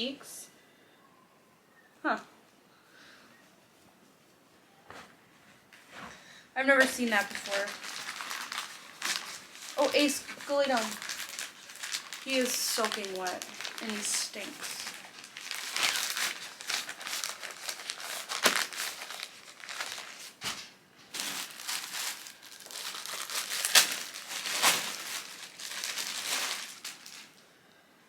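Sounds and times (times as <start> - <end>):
packaging crinkling and rustling: 6.8 - 27.4.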